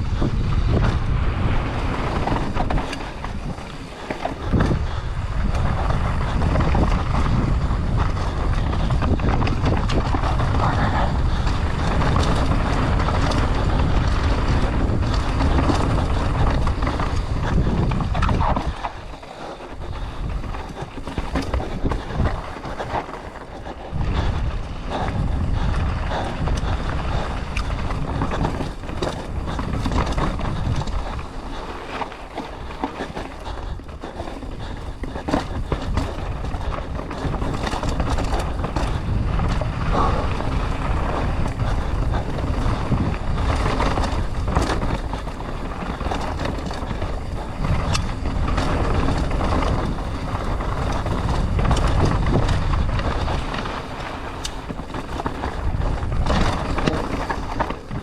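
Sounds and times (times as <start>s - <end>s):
bike knocks and rattles: 0.0s - 58.0s
tyres rolling on dirt: 0.0s - 58.0s
wind rushing over microphone: 0.0s - 58.0s.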